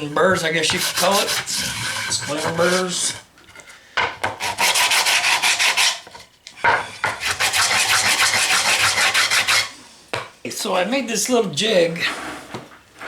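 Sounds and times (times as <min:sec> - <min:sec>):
sandpaper rubbing on wood: 0:00.6 - 0:03.2, 0:04.4 - 0:06.0, 0:07.2 - 0:09.7.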